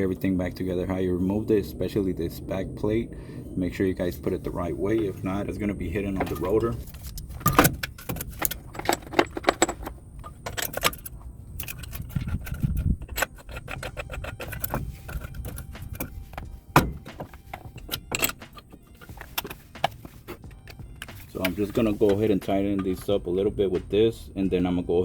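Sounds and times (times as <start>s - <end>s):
metal parts clanking: 6.1s - 23.3s.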